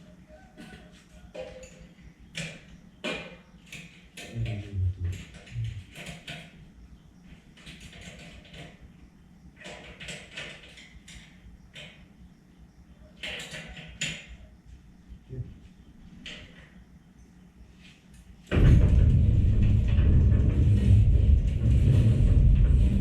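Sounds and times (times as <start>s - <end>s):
low hum: 4.4s - 5.9s, 18.5s - 23.0s
tools and metal parts clicking: 13.2s - 14.4s.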